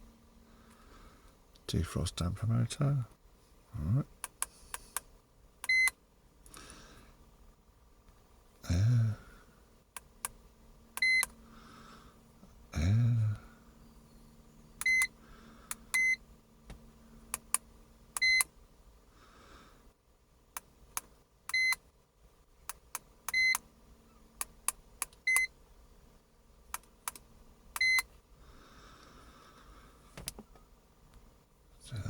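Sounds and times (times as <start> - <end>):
scan tool beeping: 11.0 - 11.3.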